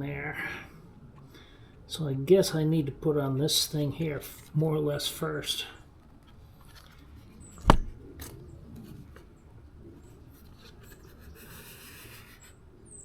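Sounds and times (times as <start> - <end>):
faint rubbing and rustling: 6.2 - 12.7
sharp tap: 7.6 - 8.0.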